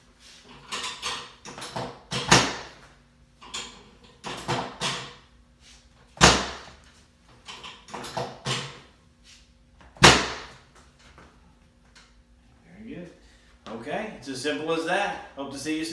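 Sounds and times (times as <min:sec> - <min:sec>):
loud impacts on treatment table: 0:01.8 - 0:02.8, 0:06.2 - 0:06.7, 0:10.0 - 0:10.6.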